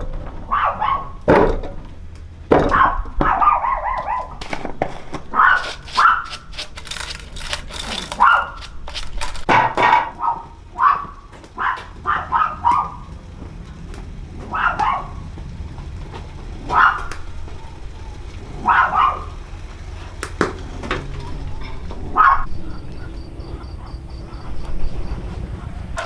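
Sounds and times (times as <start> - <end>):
knocks: 0.0 - 5.8
dog barking and yipping: 0.3 - 1.5, 2.6 - 13.6, 14.2 - 26.0.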